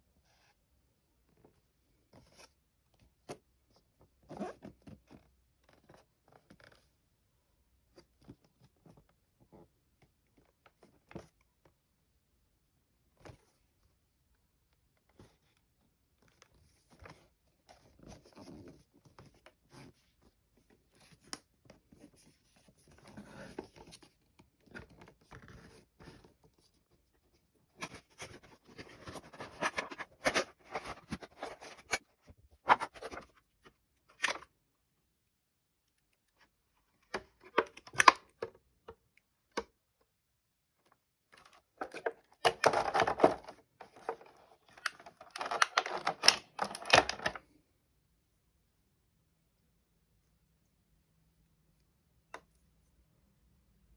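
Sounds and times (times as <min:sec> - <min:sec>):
packaging rustling and scraping: 0:27.8 - 0:32.0, 0:41.8 - 0:47.4.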